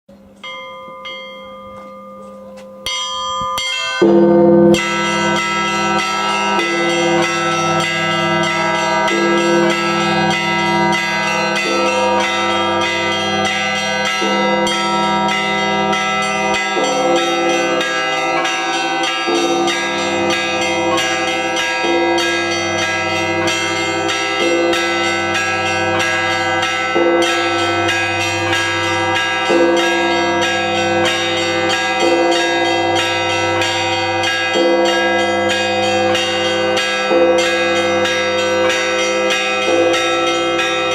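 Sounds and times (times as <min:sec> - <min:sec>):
church bells pealing: 0:00.1 - 0:40.9.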